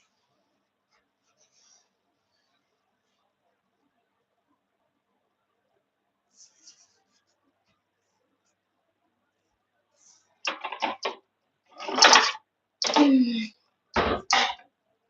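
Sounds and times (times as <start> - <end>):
rustling: 6.2 - 8.7.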